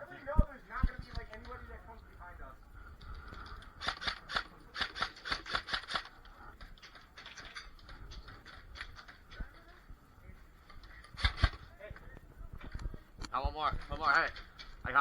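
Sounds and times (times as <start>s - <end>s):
airsoft gun shots: 11.2s - 11.6s.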